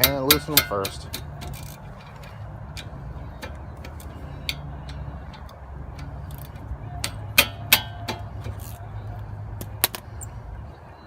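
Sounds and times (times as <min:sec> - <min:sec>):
ringing metal clank: 0:00.0 - 0:02.4, 0:03.3 - 0:08.6
wrench clicking on metal: 0:00.0 - 0:08.8.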